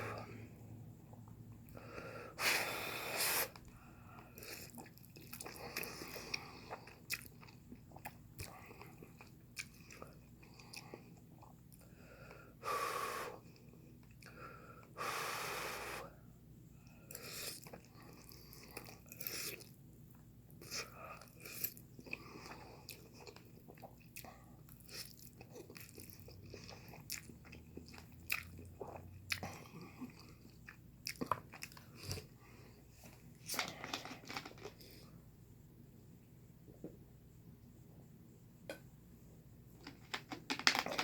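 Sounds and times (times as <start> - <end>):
person chewing noodles: 3.0 - 11.9, 16.8 - 32.8.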